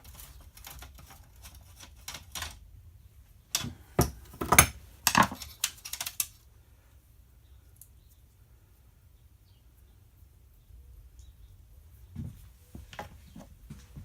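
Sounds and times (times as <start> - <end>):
pliers and metal parts clinking: 3.5 - 6.4.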